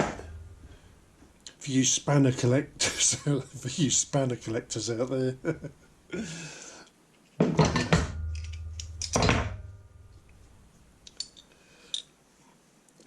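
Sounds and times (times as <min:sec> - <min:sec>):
metal spanners clanking: 0:07.6 - 0:09.4.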